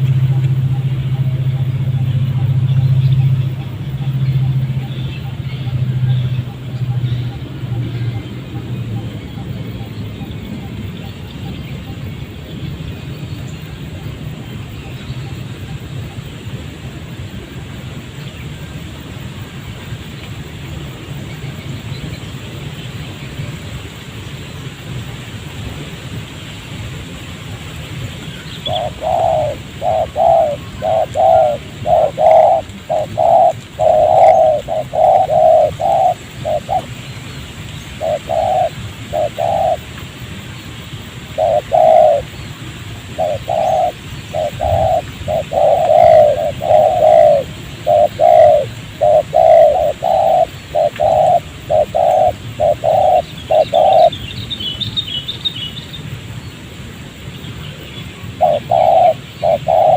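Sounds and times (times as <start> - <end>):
dove cooing: 0.0 - 12.0, 28.6 - 37.0, 37.9 - 39.8, 41.3 - 42.4, 43.1 - 54.1, 58.4 - 59.9
small bird chirping: 28.1 - 39.8, 43.2 - 56.0.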